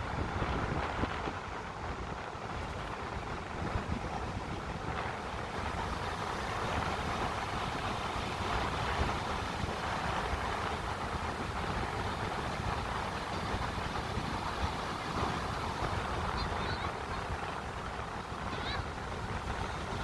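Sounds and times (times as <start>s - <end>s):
steady rushing noise: 0.0s - 20.0s
wind buffeting microphone: 0.0s - 20.0s.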